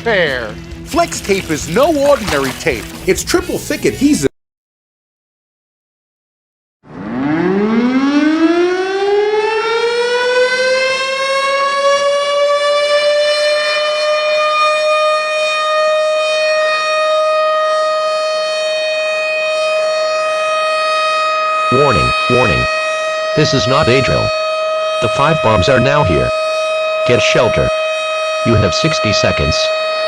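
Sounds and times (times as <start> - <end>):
civil defense siren wailing: 6.8 - 30.0.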